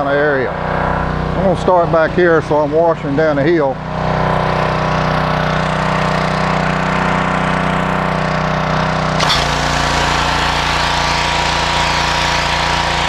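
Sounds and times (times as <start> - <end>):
pressure washer engine running: 0.5 - 13.0.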